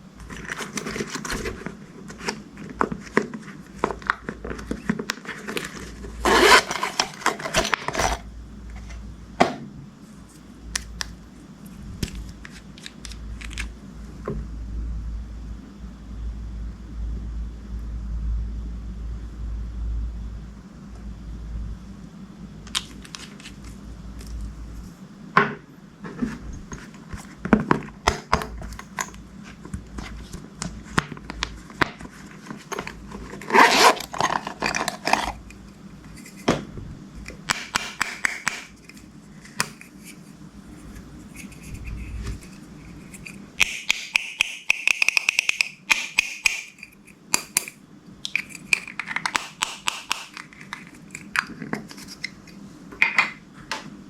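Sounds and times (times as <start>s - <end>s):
slime scraping: 4.6s - 9.0s, 31.6s - 35.5s.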